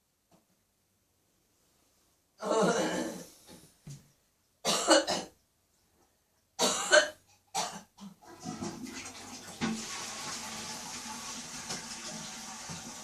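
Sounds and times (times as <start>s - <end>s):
woman coughing: 2.4s - 3.2s, 4.6s - 5.3s, 6.6s - 7.9s
tap water running: 8.2s - 13.0s.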